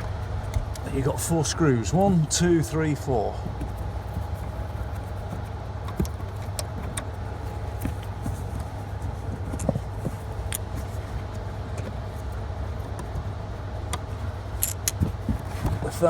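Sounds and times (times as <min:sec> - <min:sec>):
steady low hum: 0:00.0 - 0:16.0
screws clicking and clattering: 0:14.6 - 0:15.1.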